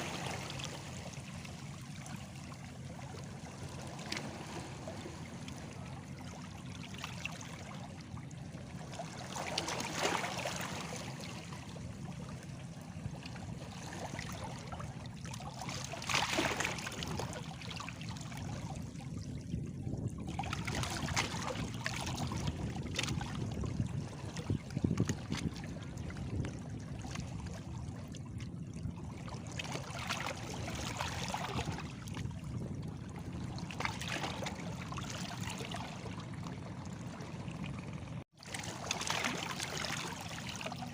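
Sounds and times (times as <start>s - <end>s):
sea waves lapping against stones: 8.8s - 11.9s, 15.4s - 18.3s, 38.2s - 40.9s.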